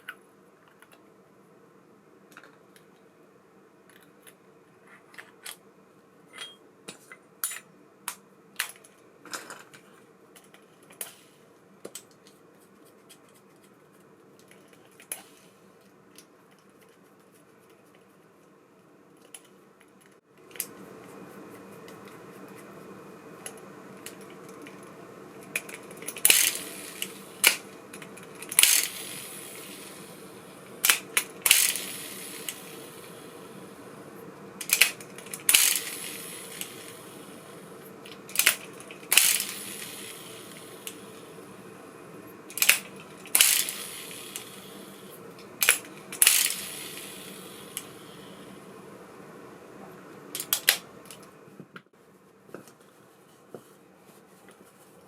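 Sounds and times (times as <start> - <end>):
steady hum: 20.4 - 51.8.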